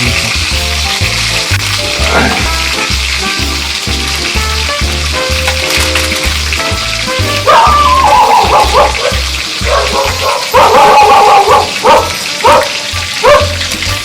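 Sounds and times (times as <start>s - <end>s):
background music with steady beat: 0.0s - 10.8s, 12.2s - 14.0s
fish sizzling in hot oil: 0.0s - 14.0s.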